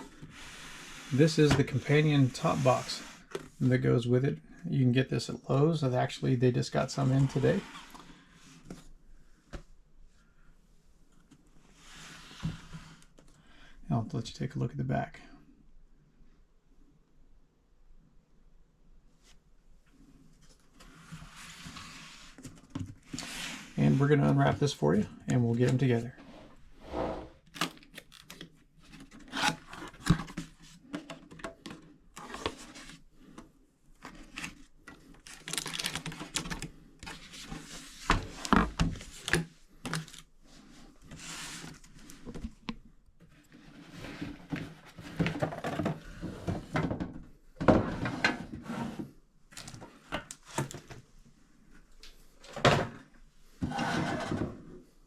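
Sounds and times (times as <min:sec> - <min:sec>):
packaging rustling and crinkling: 0:34.0 - 0:40.3.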